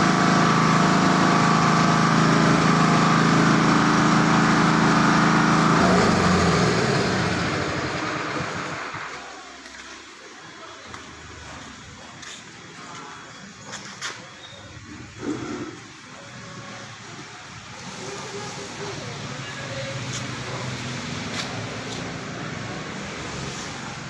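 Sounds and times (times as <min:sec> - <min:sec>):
motor running and winding down: 0:00.0 - 0:09.4.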